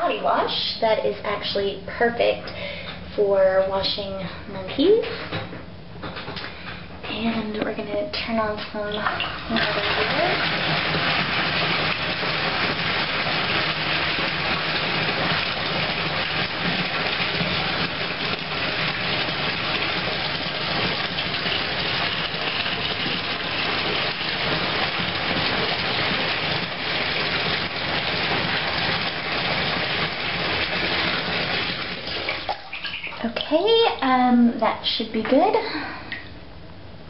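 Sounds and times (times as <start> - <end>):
water running into a bathtub: 6.1 - 34.4.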